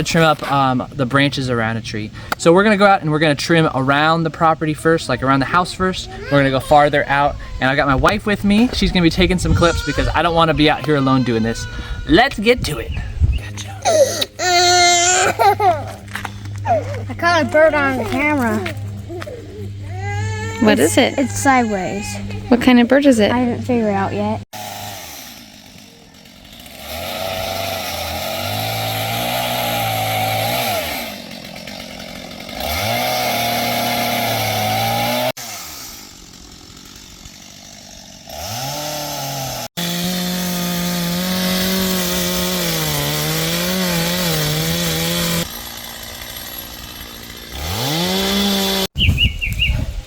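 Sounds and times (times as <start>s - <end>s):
chainsaw cutting branches: 5.2s - 49.0s
chainsaw revving: 13.5s - 22.6s, 24.5s - 49.0s.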